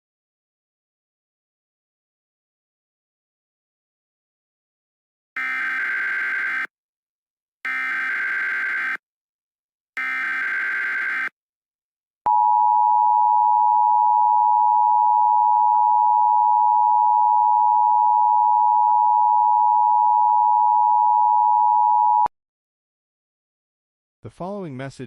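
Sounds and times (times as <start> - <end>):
harsh buzzing data burst: 5.4 - 6.7, 7.7 - 9.0, 10.0 - 11.3.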